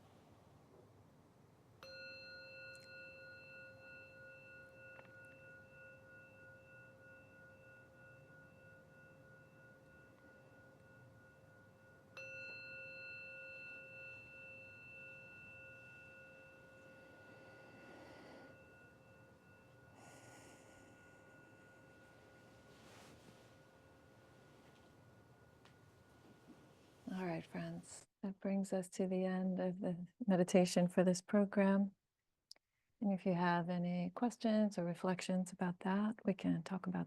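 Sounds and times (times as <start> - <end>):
meditation bell ringing: 1.8 - 27.3.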